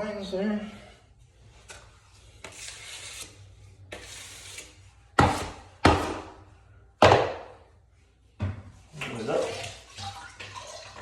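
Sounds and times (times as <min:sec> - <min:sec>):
taping knife scraping compound: 0:02.3 - 0:06.1.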